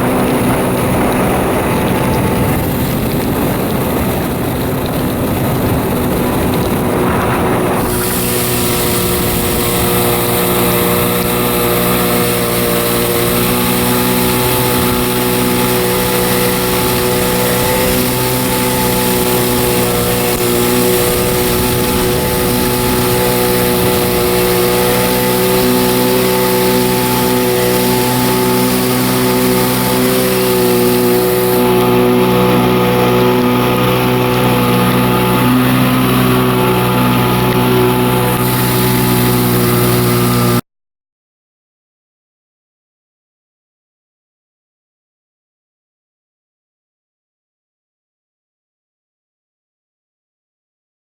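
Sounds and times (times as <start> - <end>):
jet ski engine droning: 0.0 - 40.6
rushing noise: 0.0 - 40.6.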